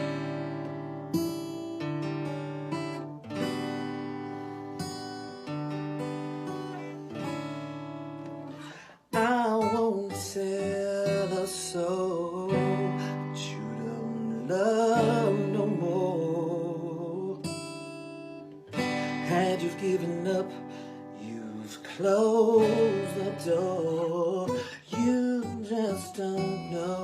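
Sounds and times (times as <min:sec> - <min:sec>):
acoustic guitar strumming: 0:00.0 - 0:27.0
person singing: 0:08.6 - 0:17.7, 0:18.9 - 0:27.0.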